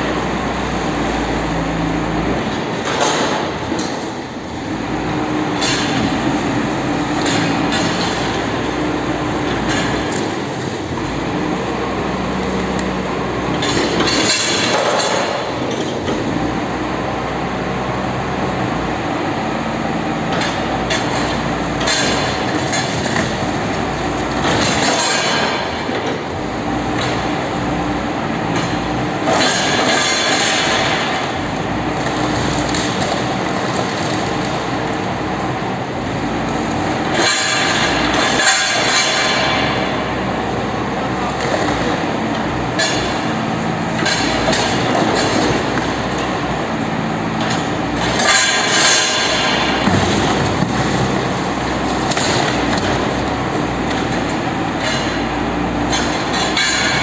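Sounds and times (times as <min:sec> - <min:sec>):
heavy machinery running: 0:00.0 - 0:57.0.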